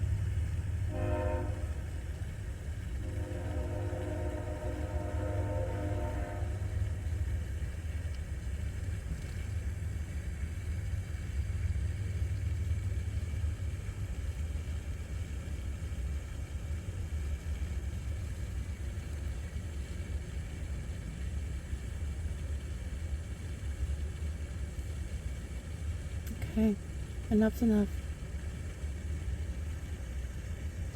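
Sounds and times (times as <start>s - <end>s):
train horn chord: 0.0s - 2.2s, 3.0s - 7.4s
train passing rumble: 0.0s - 30.9s.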